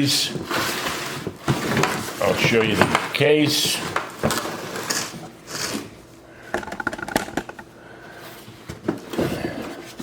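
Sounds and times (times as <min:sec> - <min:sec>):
plastic case clicks and knocks: 0:06.5 - 0:07.6.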